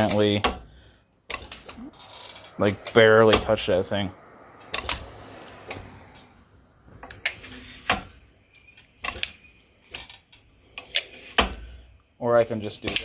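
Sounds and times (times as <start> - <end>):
power hammer tapping: 0.0 - 3.7
air hissing: 0.0 - 12.2.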